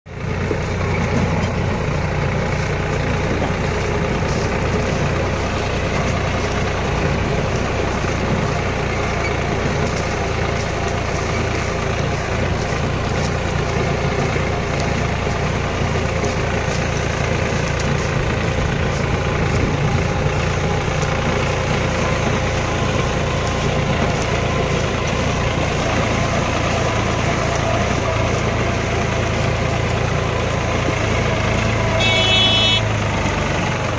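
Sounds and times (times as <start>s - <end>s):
tractor engine running: 0.1s - 33.9s.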